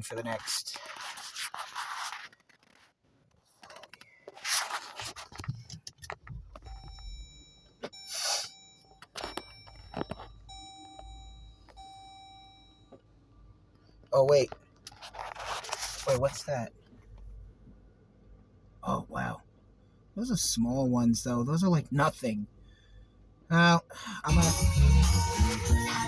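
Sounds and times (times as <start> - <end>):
handling noises: 0.4 - 8.1, 8.9 - 11.9
car engine rumble: 5.2 - 8.0.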